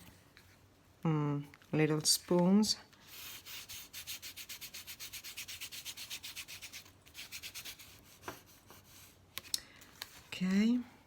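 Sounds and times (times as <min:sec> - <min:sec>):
spoons rubbing over paper: 0:03.0 - 0:09.2.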